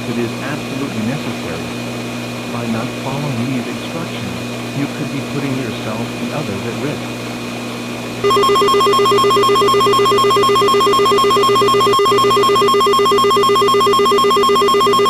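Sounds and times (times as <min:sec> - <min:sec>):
pulsing two-tone alert tone: 0:08.2 - 0:15.0.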